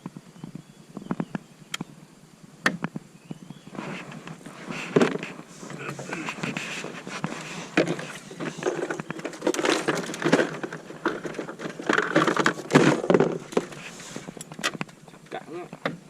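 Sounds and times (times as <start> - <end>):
rustling and crackling: 2.8 - 16.0
scattered clicks and knocks: 6.2 - 16.0.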